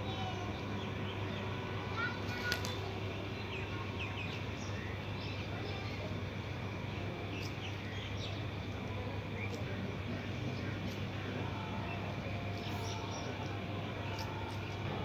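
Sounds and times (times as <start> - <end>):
small birds chirping: 6.8 - 9.7.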